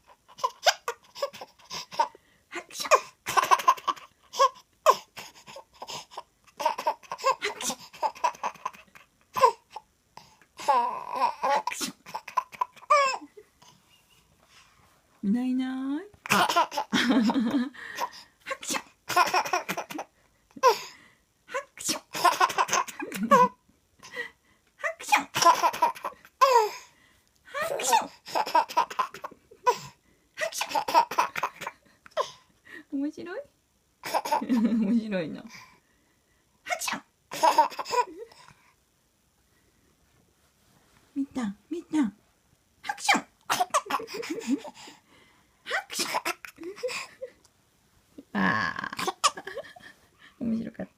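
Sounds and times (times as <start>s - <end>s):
baby laughing: 0.0s - 2.2s, 2.8s - 9.8s, 10.6s - 13.4s, 16.2s - 20.8s, 21.6s - 23.6s, 24.9s - 26.8s, 27.6s - 31.8s, 34.0s - 34.6s, 37.3s - 38.4s, 42.9s - 44.9s, 45.7s - 47.4s, 48.9s - 49.9s.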